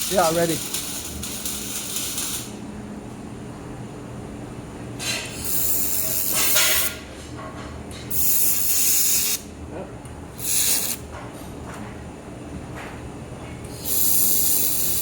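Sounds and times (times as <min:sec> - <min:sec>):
laser welder hissing bursts: 0:00.0 - 0:02.5, 0:05.4 - 0:06.9, 0:08.1 - 0:09.4, 0:10.4 - 0:11.0, 0:13.7 - 0:15.0.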